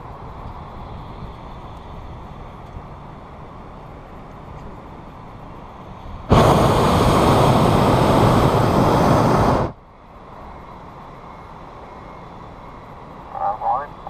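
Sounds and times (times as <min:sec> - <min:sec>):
propane burner blast: 0:06.2 - 0:09.8.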